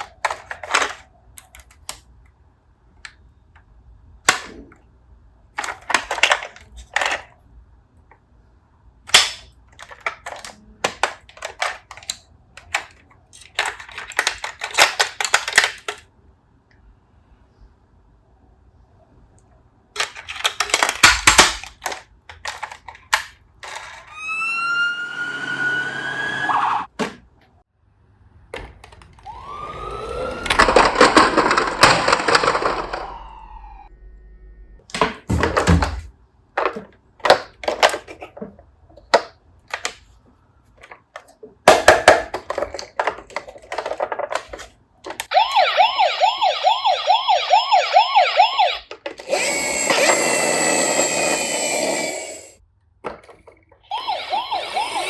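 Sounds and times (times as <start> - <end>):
plastic toy clicks: 5.6 - 7.4, 9.1 - 16.1, 20.0 - 24.1
electronic toy siren wailing: 24.0 - 26.9, 29.2 - 31.1, 32.4 - 34.8, 45.3 - 52.5, 53.9 - 55.0
toy motor whirring: 49.2 - 52.6, 53.9 - 55.0.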